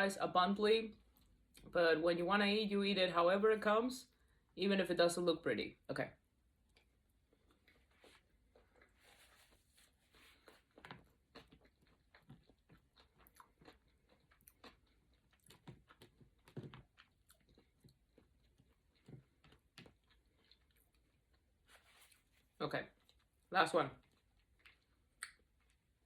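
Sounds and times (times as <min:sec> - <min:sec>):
chewing crispy sushi: 0:06.6 - 0:26.0.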